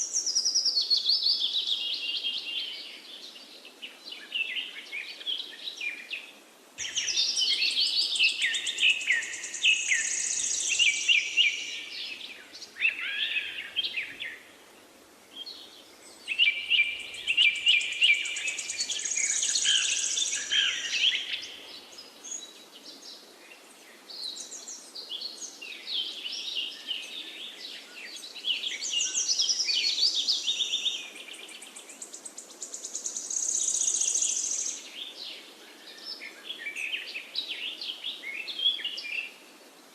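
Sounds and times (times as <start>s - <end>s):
songbirds chirping and trilling: 0.0s - 39.5s.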